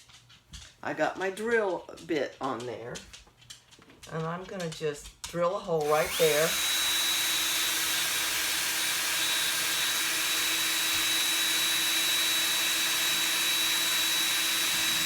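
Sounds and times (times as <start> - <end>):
electric drill whining: 5.8 - 15.0.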